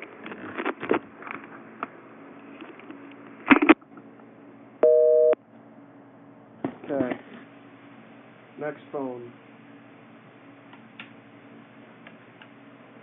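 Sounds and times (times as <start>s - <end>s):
two-pitch busy signal tone: 4.8s - 5.4s.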